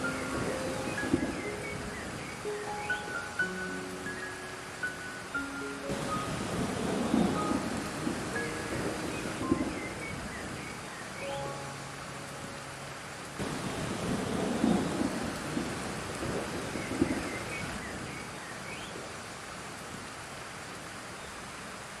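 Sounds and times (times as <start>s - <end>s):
steady rain falling: 0.0s - 22.0s
thunder rolling: 13.4s - 17.3s.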